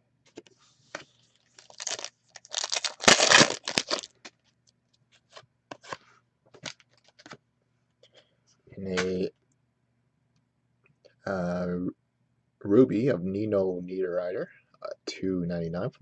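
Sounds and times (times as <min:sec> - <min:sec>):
paper and foil wrapper tearing: 0:01.4 - 0:04.2
cards clicking and rustling: 0:06.6 - 0:07.4.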